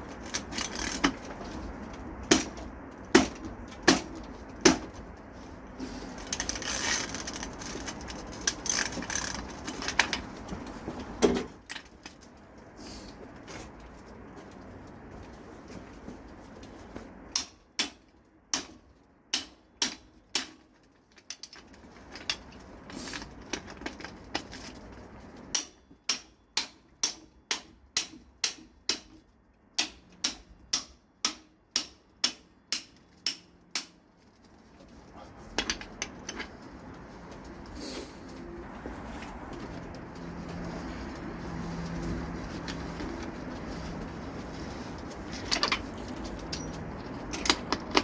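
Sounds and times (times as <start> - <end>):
hammer striking metal: 29.8 - 34.0.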